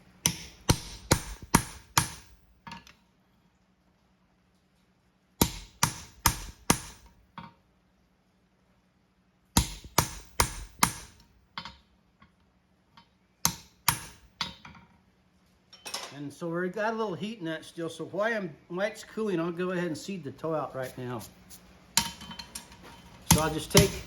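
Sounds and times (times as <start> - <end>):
hammer ringing on metal punch: 0.3 - 2.4, 5.4 - 7.0, 9.6 - 11.2, 13.5 - 14.6, 23.3 - 24.0.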